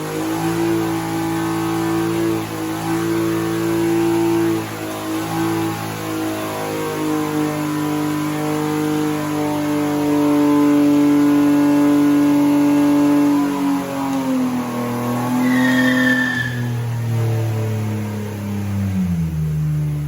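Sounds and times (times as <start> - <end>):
car engine at high revs: 0.0 - 20.0
high falling squeal: 15.2 - 16.9.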